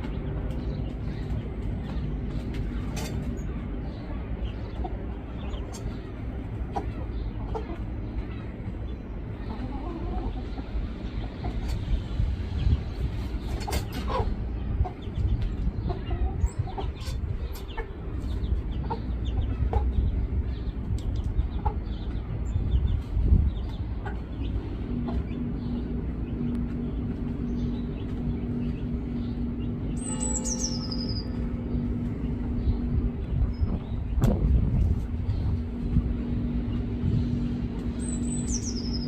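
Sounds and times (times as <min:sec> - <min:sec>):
chickens clucking: 0:00.0 - 0:30.0
constant low rumble: 0:00.0 - 0:39.0
steady low hum: 0:00.0 - 0:39.0.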